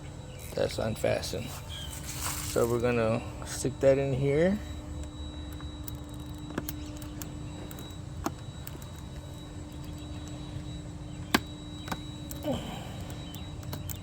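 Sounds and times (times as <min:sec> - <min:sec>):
low outdoor hum: 0:00.0 - 0:14.0
sharp metal clicks: 0:11.3 - 0:14.0.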